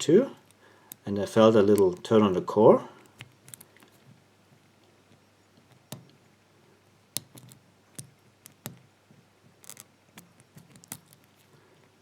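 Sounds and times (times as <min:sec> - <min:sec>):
lock pick metallic clicks: 0:00.4 - 0:01.0, 0:07.2 - 0:08.8, 0:09.6 - 0:11.4.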